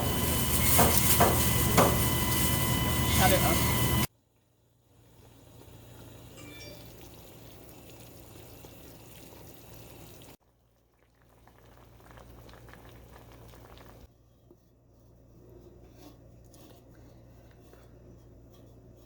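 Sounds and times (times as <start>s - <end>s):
soup bubbling in a pot: 4.8s - 14.2s.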